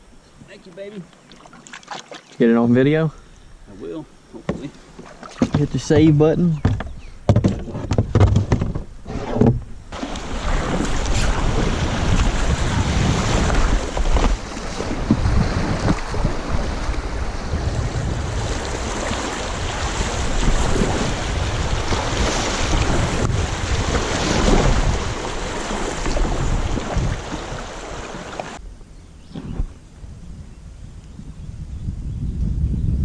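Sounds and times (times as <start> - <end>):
water around kayak hull: 0.1 - 2.6, 3.8 - 28.6
wind buffeting microphone: 9.7 - 33.0.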